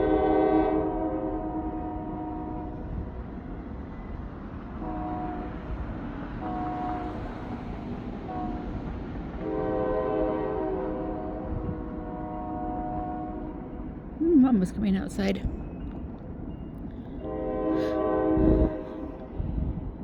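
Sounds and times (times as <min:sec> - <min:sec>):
train horn blasts: 0:00.0 - 0:03.1, 0:04.8 - 0:05.8, 0:06.4 - 0:07.4, 0:08.2 - 0:13.7, 0:17.2 - 0:19.4
low rumble of rolling train: 0:00.0 - 0:20.0.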